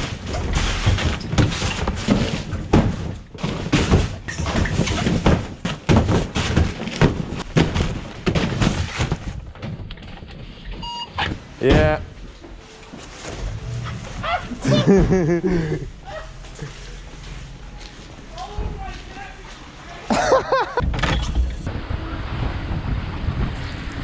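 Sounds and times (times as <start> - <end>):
knocks and thumps: 0.0 - 12.4
low rumble: 13.2 - 19.9, 20.7 - 24.0.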